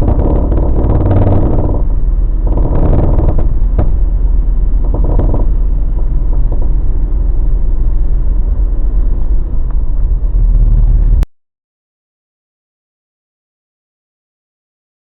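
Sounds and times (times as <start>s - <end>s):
short knocks: 0.0s - 6.9s
truck engine low rumble: 0.0s - 11.2s.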